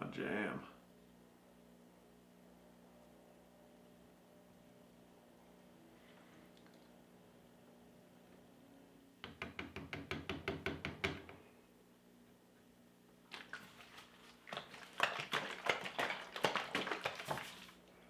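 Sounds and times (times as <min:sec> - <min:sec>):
liquid sloshing in plastic jug: 0:13.2 - 0:17.9.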